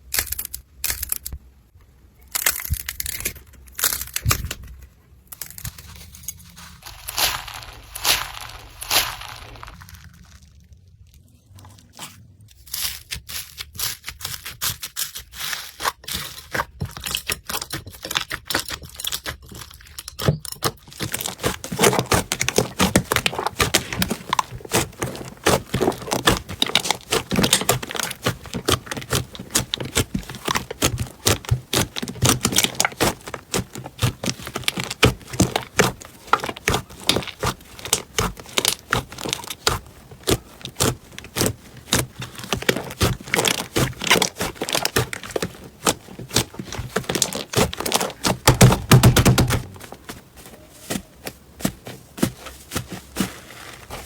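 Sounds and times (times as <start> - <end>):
slime crackling and popping: 6.8 - 11.4, 20.8 - 49.8.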